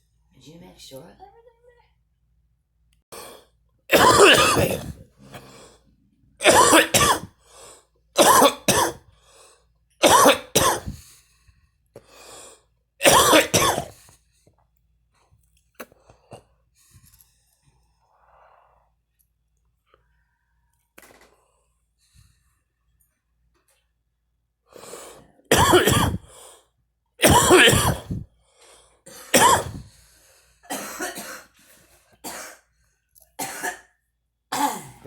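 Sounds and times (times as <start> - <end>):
woman coughing: 3.9 - 5.0, 6.4 - 7.3, 8.2 - 9.0, 10.0 - 11.0, 13.0 - 13.9, 25.5 - 26.2, 27.2 - 28.2, 29.3 - 29.9, 30.7 - 31.5, 32.2 - 32.6, 33.4 - 33.9, 34.5 - 35.0.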